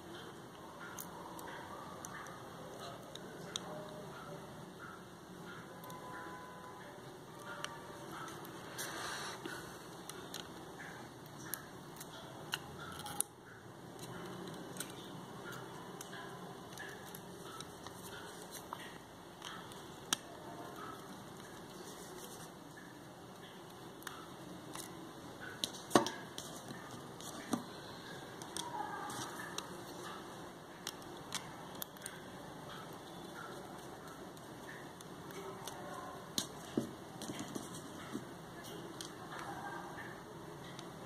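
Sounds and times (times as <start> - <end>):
plastic parts clicking and scraping: 11.4 - 13.4.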